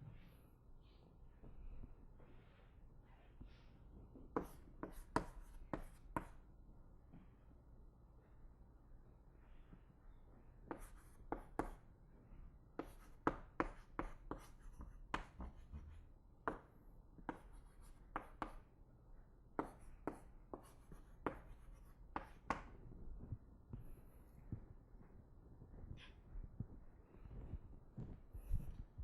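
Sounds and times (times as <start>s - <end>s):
steady low hum: 0.0s - 29.0s
pen tapping and scraping on paper: 4.3s - 6.4s, 10.7s - 11.8s, 12.8s - 18.6s, 19.6s - 22.7s.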